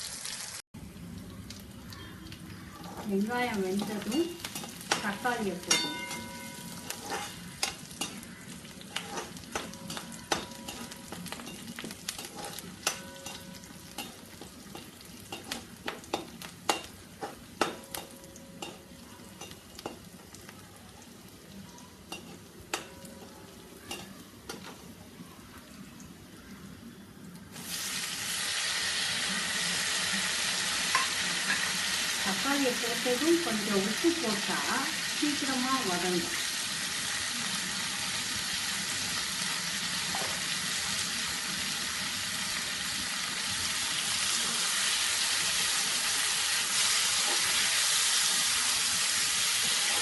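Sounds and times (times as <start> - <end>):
food frying in oil: 0.0 - 50.0
spatula scraping and tapping pan: 2.8 - 20.1, 22.1 - 24.8.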